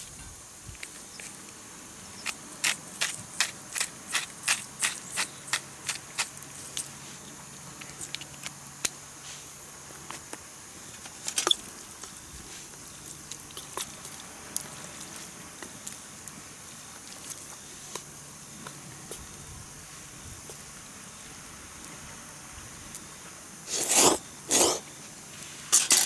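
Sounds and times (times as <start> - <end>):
salt shaker clicks: 2.2 - 6.9.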